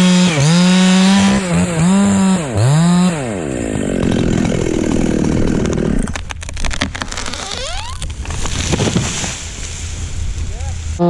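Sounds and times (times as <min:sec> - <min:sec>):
chainsaw engine: 0:00.0 - 0:08.4
sharp cracks and knocks: 0:04.3 - 0:09.5.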